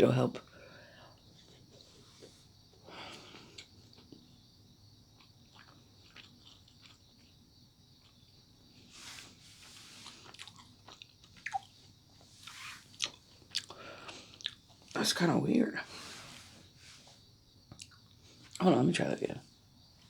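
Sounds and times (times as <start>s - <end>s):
person biting and chewing: 5.4s - 7.3s, 9.8s - 14.8s
small mouth clicks: 10.3s - 11.8s.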